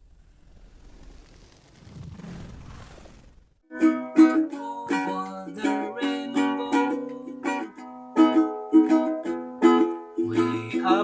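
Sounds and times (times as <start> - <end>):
ukulele strumming chords: 3.7 - 11.0.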